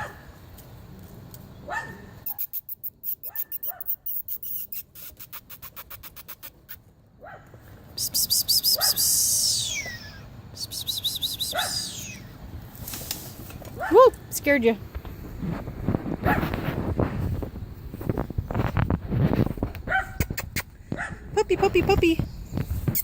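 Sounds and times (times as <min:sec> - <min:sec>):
dog barking: 0:00.0 - 0:00.3, 0:01.6 - 0:02.4, 0:03.2 - 0:04.0, 0:07.2 - 0:07.5, 0:08.8 - 0:09.1, 0:11.5 - 0:12.0, 0:19.9 - 0:20.3, 0:21.0 - 0:21.2
birds chirping in trills: 0:08.0 - 0:12.4.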